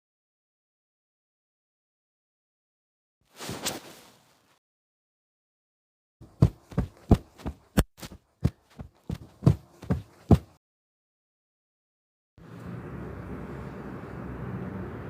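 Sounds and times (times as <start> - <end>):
footsteps: 6.2 - 10.6.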